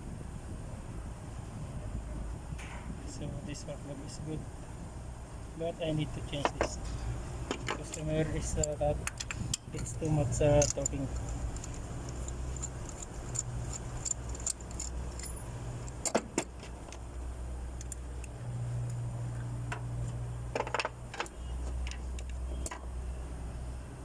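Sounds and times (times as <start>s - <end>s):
steady low hum: 0.0s - 24.0s
metal tools clinking and rattling: 6.3s - 17.0s.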